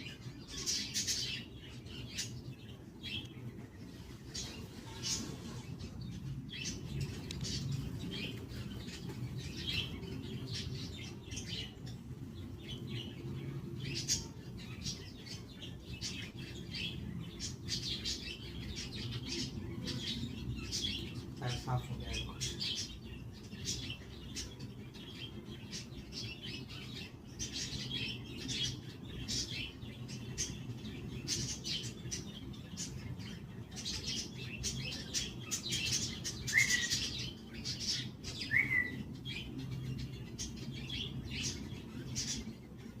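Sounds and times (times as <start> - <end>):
low steady hum: 0.0 - 43.0
budgerigars chirping: 13.9 - 42.6.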